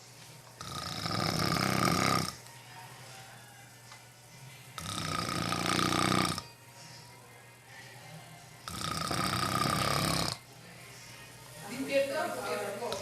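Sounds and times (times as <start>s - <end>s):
person snoring: 0.6s - 2.4s, 4.8s - 6.6s, 8.6s - 10.4s.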